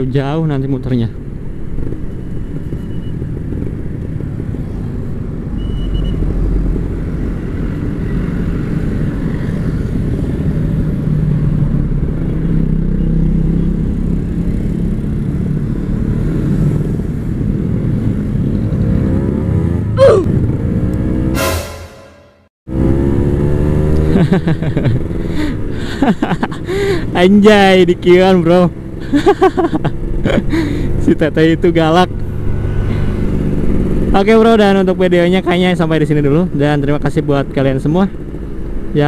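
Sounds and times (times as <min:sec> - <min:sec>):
sharp rising and falling sweep: 0:21.2 - 0:22.5.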